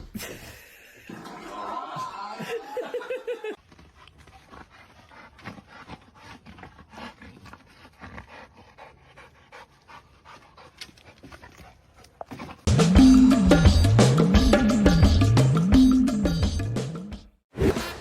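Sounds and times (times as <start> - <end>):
dog panting: 3.6 - 12.7.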